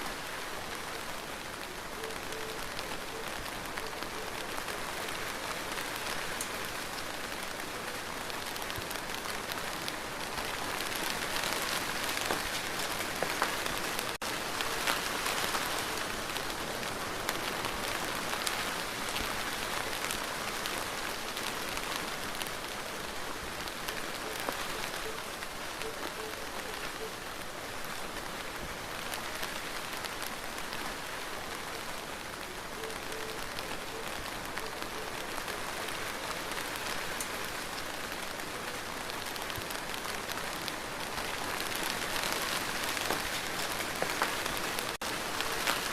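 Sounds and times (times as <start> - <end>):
steady rain falling: 0.0 - 45.9.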